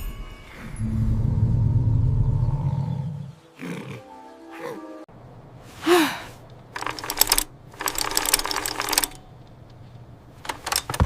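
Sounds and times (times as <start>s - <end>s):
rising-and-falling tone: 0.6s - 5.1s
rapid clicking: 6.8s - 9.2s, 10.4s - 11.0s.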